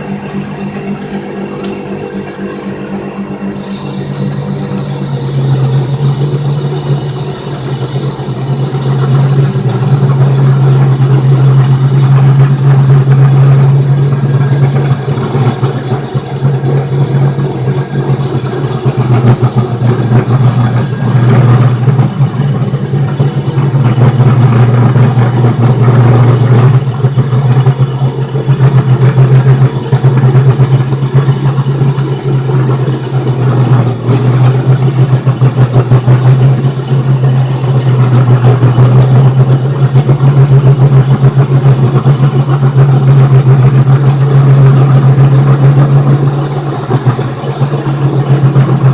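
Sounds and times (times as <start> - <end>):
rattling and clicking: 0.0 - 3.5
lathe motor humming: 0.0 - 48.9.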